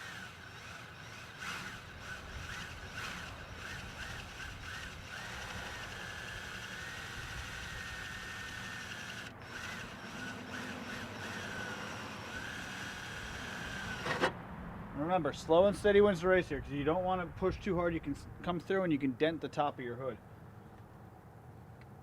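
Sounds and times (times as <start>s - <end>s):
electric drill whining: 0.0s - 14.3s.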